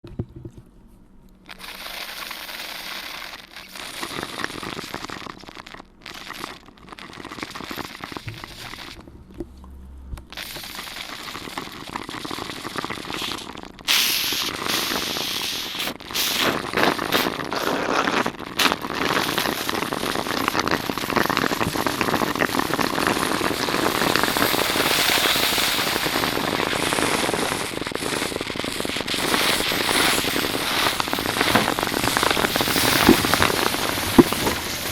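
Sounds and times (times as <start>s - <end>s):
crumpled paper and plastic crackling: 29.1s - 34.9s.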